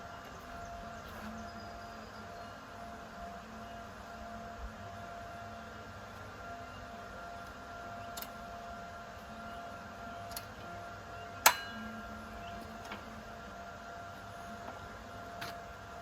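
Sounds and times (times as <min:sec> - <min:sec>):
high electrical hum: 0:00.0 - 0:16.0
ringing metallic clink: 0:11.4 - 0:12.0.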